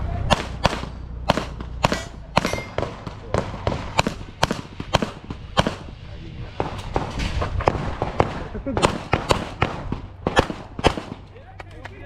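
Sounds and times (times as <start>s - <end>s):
handgun shots: 0.3s - 5.8s, 8.8s - 11.2s.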